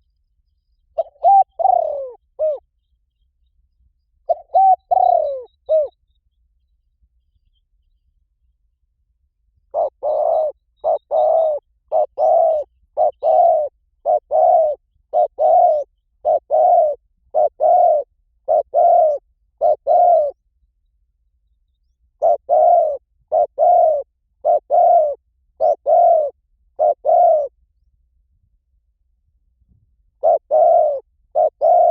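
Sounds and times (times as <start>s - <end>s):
dove cooing: 1.0s - 2.7s, 4.3s - 6.0s, 9.7s - 20.4s, 22.2s - 27.6s, 30.2s - 31.9s.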